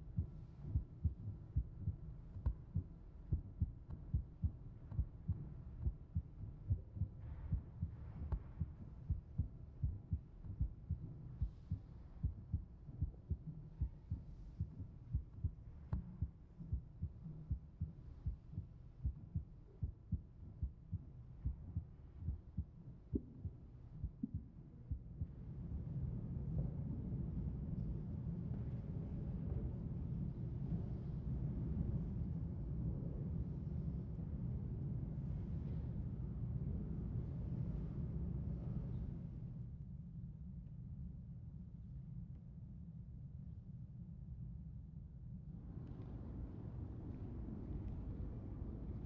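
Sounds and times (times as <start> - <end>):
amplified heartbeat thumps: 0.0 - 25.5
faint hum: 0.0 - 49.0.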